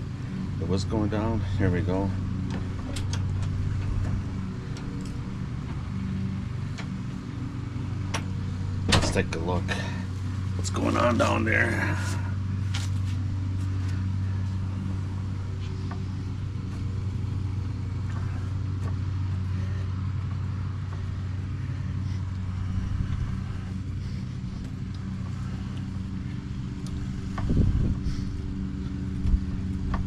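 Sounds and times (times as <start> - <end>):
engine idling low hum: 0.0 - 30.0.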